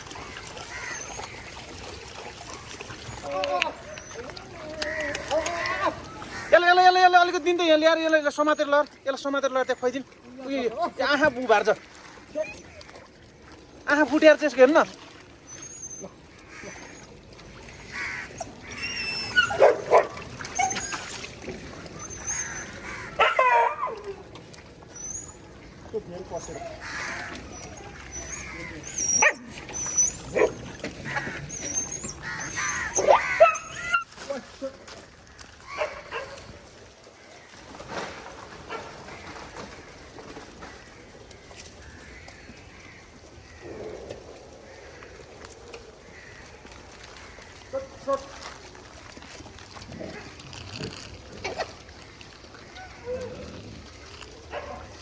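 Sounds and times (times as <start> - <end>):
animal noises: 0.0 - 6.7, 15.4 - 34.1, 35.3 - 55.0
bird calls: 0.1 - 6.6, 24.8 - 34.0
dog yipping and barking: 18.7 - 21.1, 22.0 - 24.1, 27.5 - 30.6, 31.5 - 34.1, 35.7 - 36.4.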